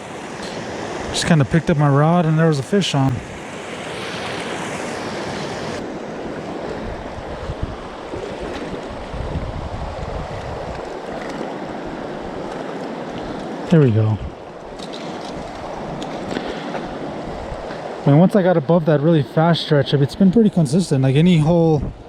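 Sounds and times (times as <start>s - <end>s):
stream water rushing: 0.0s - 21.8s
wind buffeting microphone: 5.0s - 13.4s, 14.0s - 18.0s, 21.5s - 22.0s.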